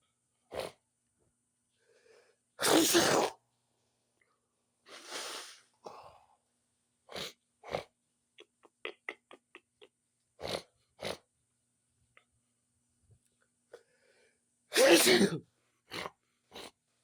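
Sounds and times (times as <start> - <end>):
breaths: 1.7 - 2.5, 4.9 - 6.4, 13.7 - 14.5
person sneezing: 2.6 - 3.4, 14.7 - 15.4
nose sniffing: 4.9 - 5.7, 15.9 - 16.8.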